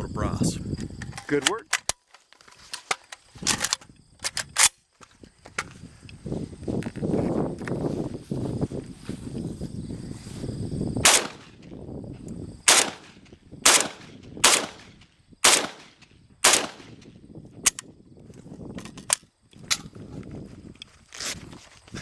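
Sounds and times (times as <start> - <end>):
gunshots: 11.0 - 11.6, 12.7 - 17.0
sharp cracks: 11.0 - 11.7, 12.7 - 17.8.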